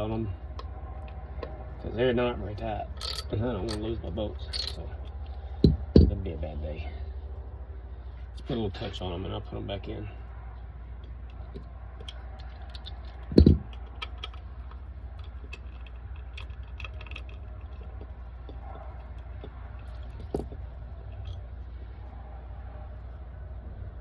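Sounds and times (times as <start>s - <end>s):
low hum: 0.0s - 24.0s
metal clicks of bolts and tools: 2.9s - 3.9s, 4.5s - 6.1s, 11.0s - 21.4s
loud thump: 13.3s - 13.7s.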